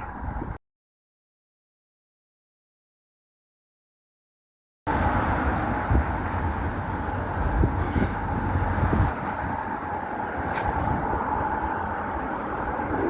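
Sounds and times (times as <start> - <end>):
outdoor background rumble: 4.9 - 13.0.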